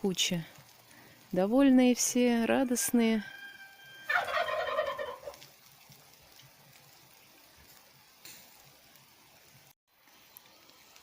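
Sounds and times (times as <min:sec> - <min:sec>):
fowl calling: 0:03.0 - 0:05.4.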